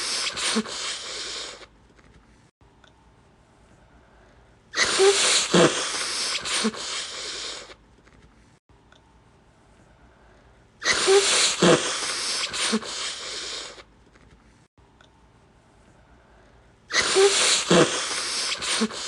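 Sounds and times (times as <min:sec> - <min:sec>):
person blowing nose: 0:00.0 - 0:01.7, 0:04.8 - 0:07.8, 0:10.8 - 0:13.9, 0:16.9 - 0:19.0.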